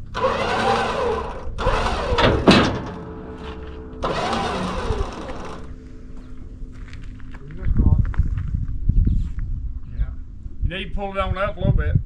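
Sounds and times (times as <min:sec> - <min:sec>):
truck engine revving: 0:00.0 - 0:07.0
sharp metal clank: 0:00.2 - 0:05.8.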